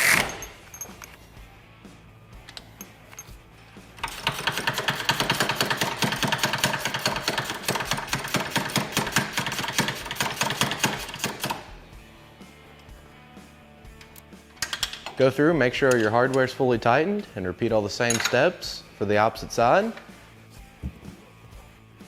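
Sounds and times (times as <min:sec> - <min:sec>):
impact wrench rattling: 0:00.0 - 0:01.2, 0:04.0 - 0:11.6.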